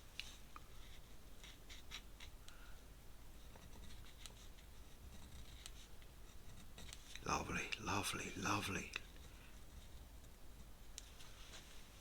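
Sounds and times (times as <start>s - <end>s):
pen scratching on paper: 0.8s - 2.4s, 3.4s - 7.0s.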